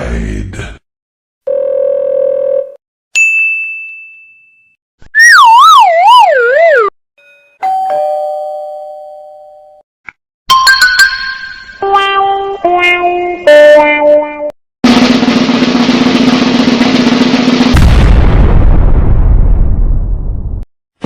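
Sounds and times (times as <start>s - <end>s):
ding-dong doorbell chime: 7.2s - 9.8s
bright bell-like tones: 10.5s - 11.8s.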